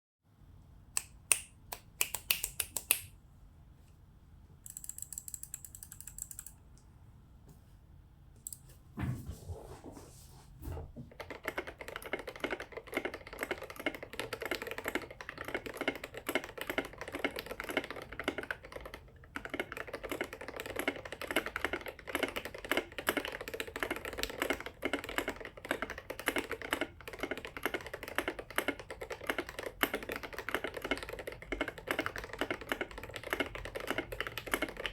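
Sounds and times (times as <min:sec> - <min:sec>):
mechanical keyboard typing: 0:01.3 - 0:03.1, 0:04.6 - 0:06.6, 0:11.1 - 0:34.9.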